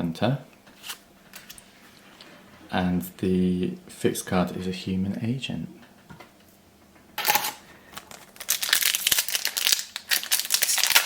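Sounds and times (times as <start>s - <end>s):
plastic wrapper crinkling: 7.2s - 11.0s.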